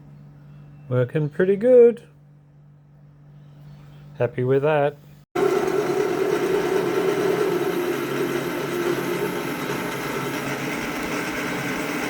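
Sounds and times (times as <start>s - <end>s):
lathe humming: 5.4s - 12.0s.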